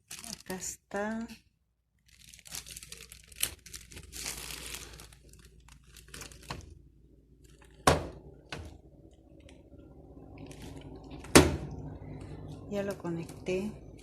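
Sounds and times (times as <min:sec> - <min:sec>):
plastic crinkling and rustling: 0:00.0 - 0:14.0.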